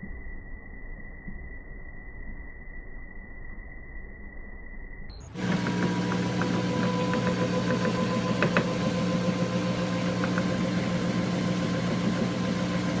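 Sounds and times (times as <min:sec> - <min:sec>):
washing machine motor hum: 0:05.3 - 0:13.0.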